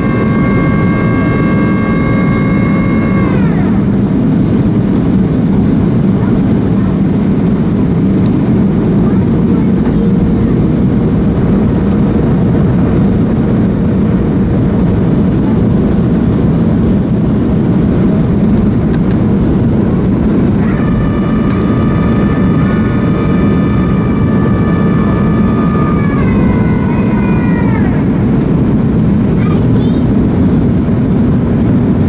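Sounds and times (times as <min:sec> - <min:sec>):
high-pitched whine: 0:00.0 - 0:06.1, 0:20.0 - 0:30.5
airplane cabin engine roar: 0:00.0 - 0:32.0.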